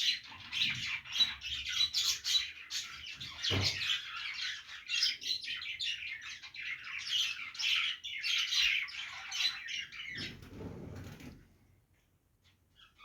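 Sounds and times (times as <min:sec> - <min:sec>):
budgerigars chattering and warbling: 0:00.0 - 0:10.3.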